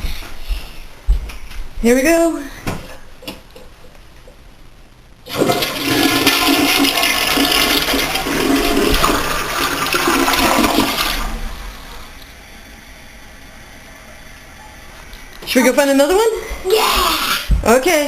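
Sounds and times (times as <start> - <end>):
toilet flushing: 5.3 - 16.6.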